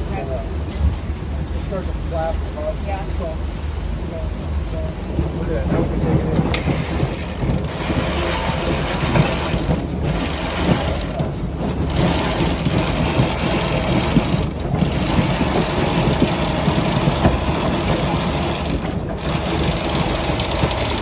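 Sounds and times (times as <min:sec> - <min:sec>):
low steady rumble: 0:00.0 - 0:21.0
winch ratcheting: 0:06.4 - 0:21.0.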